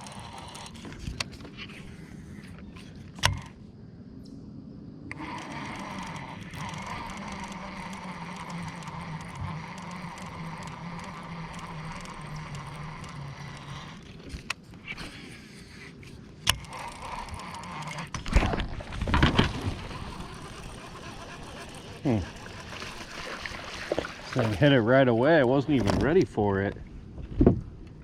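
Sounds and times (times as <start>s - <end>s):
sharp reel click: 0.0s - 1.3s, 5.1s - 14.6s, 16.4s - 18.2s
fishing reel cranking: 0.0s - 3.6s, 5.1s - 24.8s.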